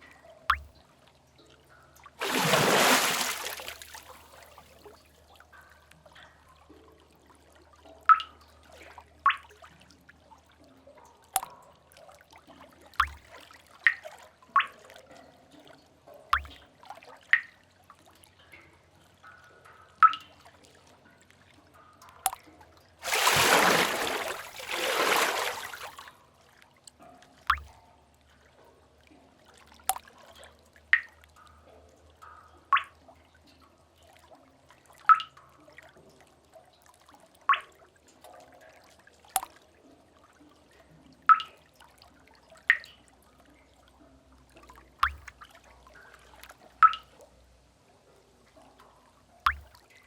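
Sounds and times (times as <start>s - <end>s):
water drops plinking into pool: 0.0s - 7.1s, 7.7s - 9.9s, 10.5s - 17.7s, 19.2s - 26.1s, 27.0s - 28.0s, 29.8s - 33.7s, 35.0s - 35.6s, 37.4s - 37.8s, 39.3s - 39.7s, 41.2s - 41.8s, 42.5s - 44.0s, 44.6s - 47.3s, 48.6s - 50.0s
water splashing: 2.2s - 4.6s, 13.0s - 13.3s, 23.0s - 26.1s, 45.0s - 45.4s, 49.5s - 49.8s.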